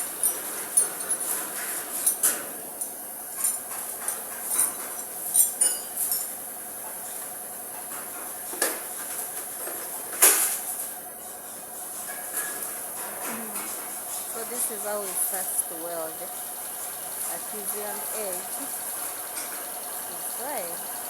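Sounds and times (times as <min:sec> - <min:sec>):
metal tools clinking: 0:00.2 - 0:06.3.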